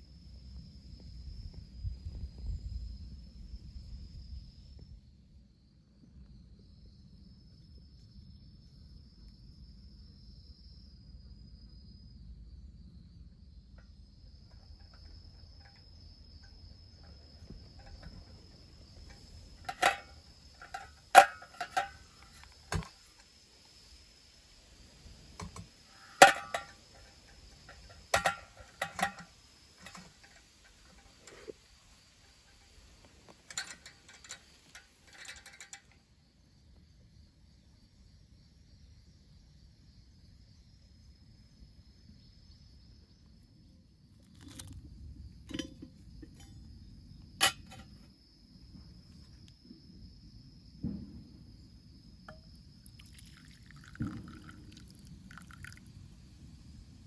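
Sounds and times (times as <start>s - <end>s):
crickets chirring: 0.0s - 57.0s
popcorn popping in metal pan: 19.0s - 22.9s, 25.3s - 31.5s.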